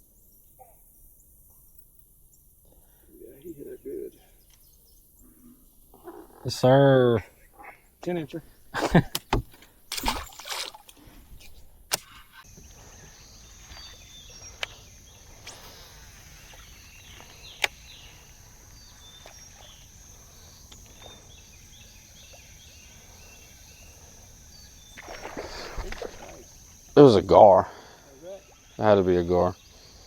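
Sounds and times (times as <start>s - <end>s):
sharp clicks: 17.5s - 17.8s.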